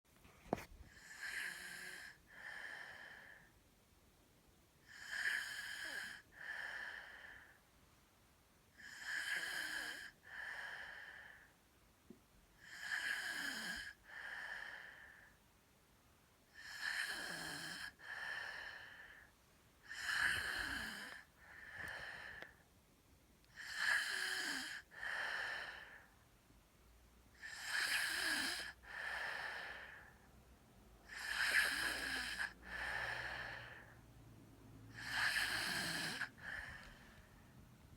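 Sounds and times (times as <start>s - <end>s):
whistling snores: 4.9s - 6.2s, 8.8s - 10.2s, 12.6s - 14.0s, 16.6s - 18.0s, 19.9s - 21.3s, 27.4s - 28.8s, 31.1s - 33.4s, 34.9s - 36.7s.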